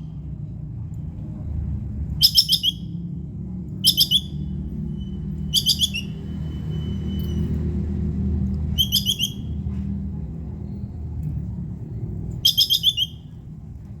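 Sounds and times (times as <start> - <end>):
squirrel chattering alarm call: 2.2 - 2.9, 3.8 - 4.4, 5.4 - 6.3, 8.7 - 9.6, 12.4 - 13.3.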